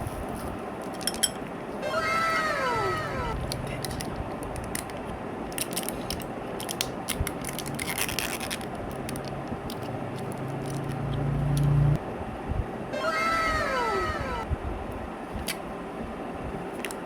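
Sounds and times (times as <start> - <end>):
low hum: 1.8 - 4.8
wrappers crackling: 3.3 - 11.0.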